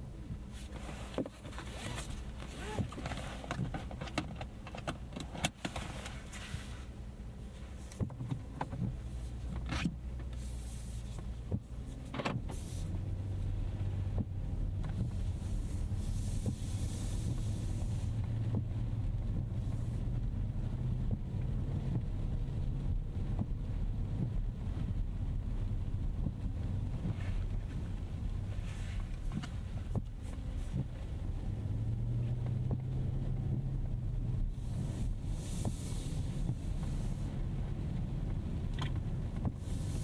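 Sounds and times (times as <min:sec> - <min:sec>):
car engine idling: 0:00.0 - 0:40.0
clicks and knocks in car cabin: 0:00.2 - 0:06.6, 0:07.8 - 0:12.6, 0:14.0 - 0:19.9, 0:26.1 - 0:31.4, 0:35.5 - 0:40.0.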